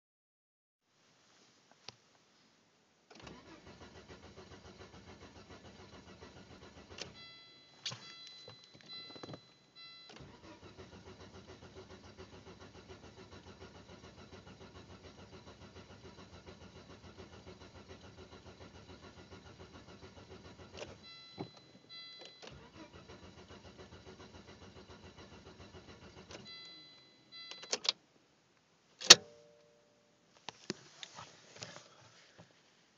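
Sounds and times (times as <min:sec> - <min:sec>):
engine cranking on starter: 0:03.1 - 0:27.9.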